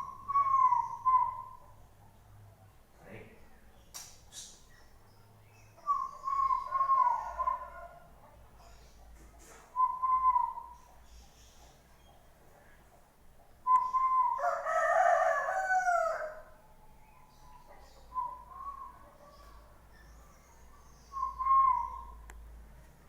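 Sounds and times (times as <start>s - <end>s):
rooster crowing: 14.2s - 16.6s.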